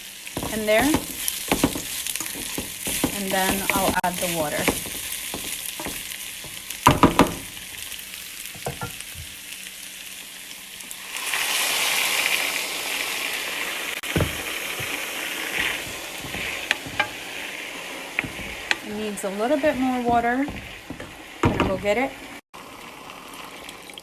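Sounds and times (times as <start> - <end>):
hot water pouring: 0.0 - 9.2, 11.0 - 24.0
rice sizzling in a pot: 0.0 - 24.0
spoon knocking against a pot: 0.4 - 7.6, 8.6 - 9.0, 15.6 - 17.2, 19.9 - 22.0.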